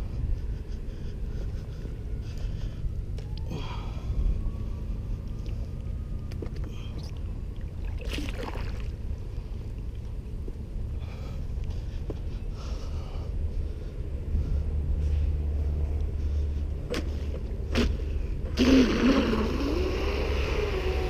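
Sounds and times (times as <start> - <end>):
wind rumbling on microphone: 0.0 - 18.6
electric motor whine: 19.0 - 21.0.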